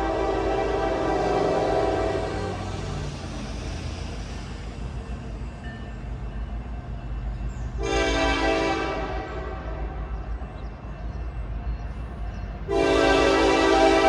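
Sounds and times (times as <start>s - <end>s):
locomotive horn blast: 0.0s - 2.7s, 7.8s - 10.0s, 12.7s - 14.0s
train low rumble: 0.0s - 14.0s.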